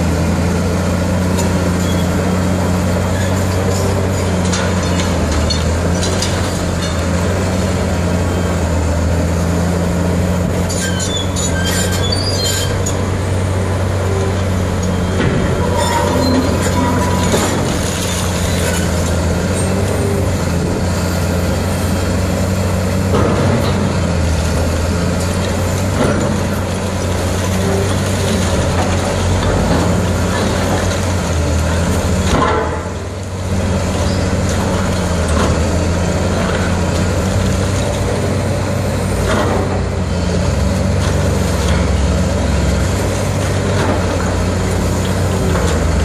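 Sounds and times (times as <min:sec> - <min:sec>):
diesel engine running under load: 0:00.0 - 0:46.0
metallic squeals and scraping: 0:01.7 - 0:02.2, 0:10.6 - 0:13.2, 0:14.0 - 0:20.2.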